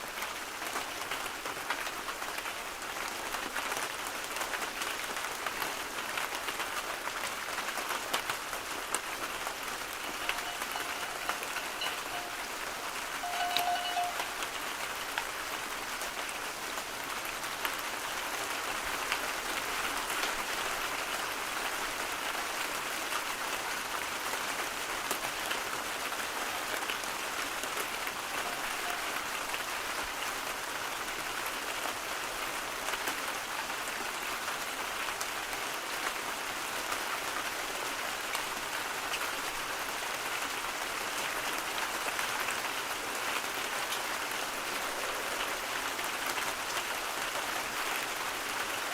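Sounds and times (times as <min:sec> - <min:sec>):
steady rain: 0:00.0 - 0:48.9.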